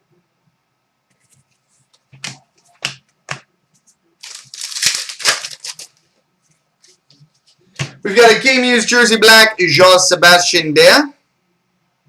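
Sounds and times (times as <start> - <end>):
plastic crinkling: 4.2 - 6.1.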